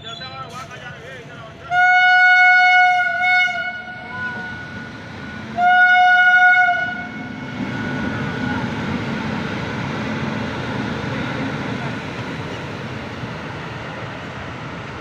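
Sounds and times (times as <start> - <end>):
train rumbling past on rails: 0.0 - 15.0
train horn blast: 1.7 - 4.7, 5.6 - 7.4.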